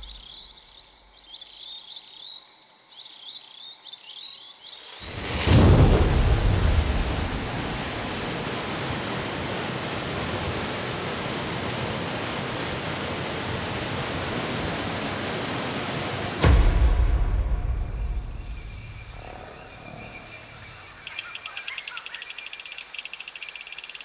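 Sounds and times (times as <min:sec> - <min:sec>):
steady rushing noise: 0:05.0 - 0:21.0.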